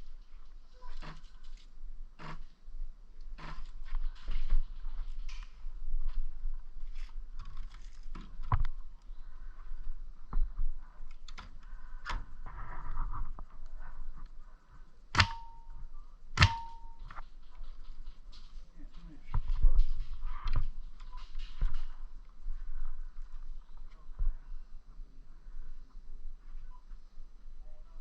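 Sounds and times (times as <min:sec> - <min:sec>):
sharp clicks and knocks: 0:15.1 - 0:15.8, 0:16.4 - 0:18.0.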